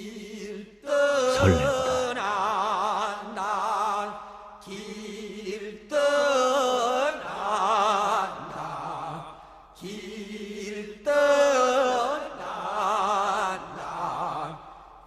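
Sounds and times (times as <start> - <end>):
chanted vocal with vibrato: 0.9 - 9.2
man speaking: 1.3 - 2.1.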